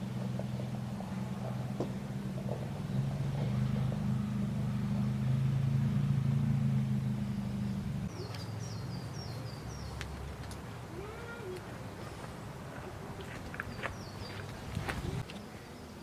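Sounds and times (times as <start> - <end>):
low engine hum: 0.0 - 10.4
birds chirping: 0.0 - 16.0.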